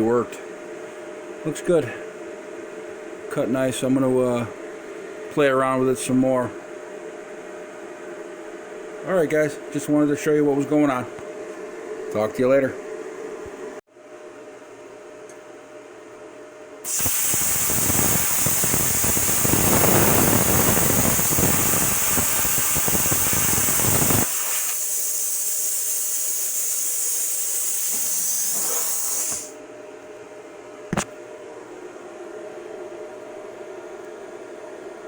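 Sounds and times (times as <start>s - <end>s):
cooling fan humming: 0.0s - 35.0s
air hissing from torch: 16.9s - 29.6s
plasma cutter crackling arc: 16.9s - 29.6s.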